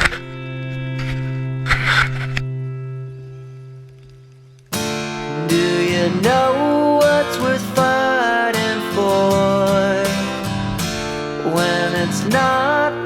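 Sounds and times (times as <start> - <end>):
strummed acoustic guitar: 0.0 - 4.0, 4.7 - 13.0
person singing: 5.0 - 13.0.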